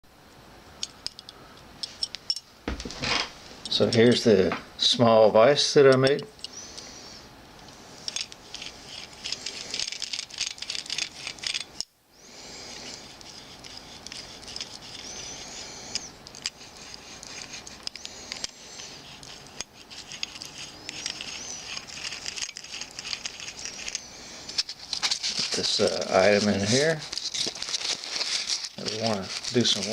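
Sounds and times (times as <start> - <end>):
small metal parts clicking and rattling: 8.0 - 11.9, 13.2 - 29.9.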